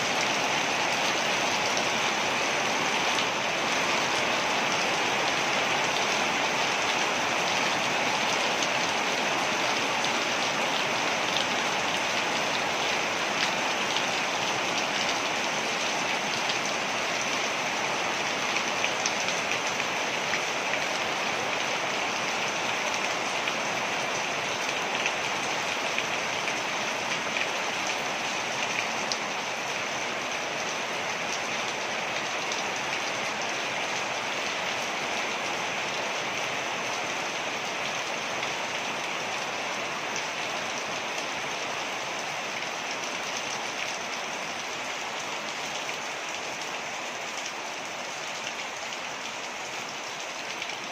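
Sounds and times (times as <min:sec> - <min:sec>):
waterfall rushing: 0:00.0 - 0:10.5.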